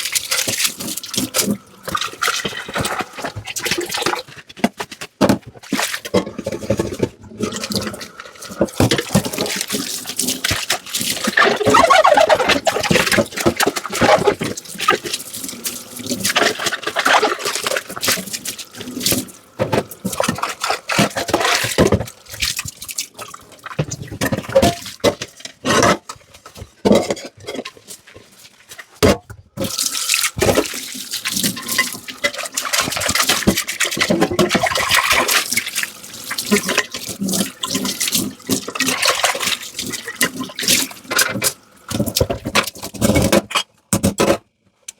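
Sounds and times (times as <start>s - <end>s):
running tap water splashing: 0.0s - 4.4s, 7.4s - 25.2s, 29.6s - 42.8s.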